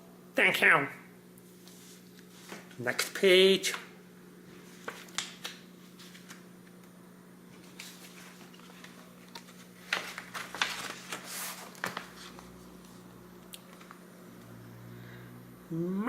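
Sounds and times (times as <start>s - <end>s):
steady low hum: 0.0s - 16.0s
pages rustling and turning: 1.6s - 2.8s, 4.5s - 6.8s, 7.5s - 14.0s.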